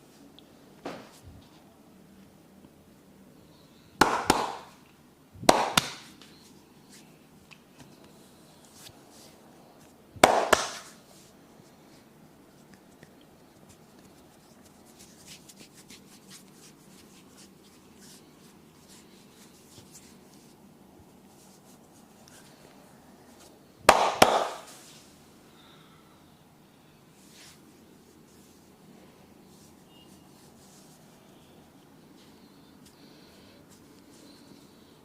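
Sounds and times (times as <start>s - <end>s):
loud sharp cracks: 5.5s - 6.1s, 10.2s - 11.0s, 23.9s - 24.8s
hands rubbing on skin: 12.5s - 22.6s, 29.4s - 31.4s.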